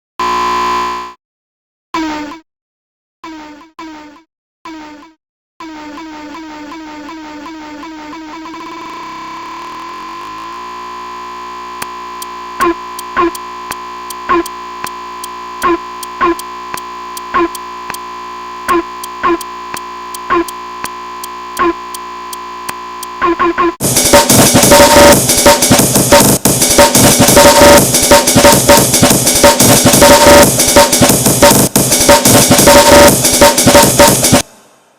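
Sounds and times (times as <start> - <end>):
synth drone: 8.5 - 25.3
electronic drums and synths: 12.2 - 18.1, 18.7 - 22.1, 23.0 - 34.5.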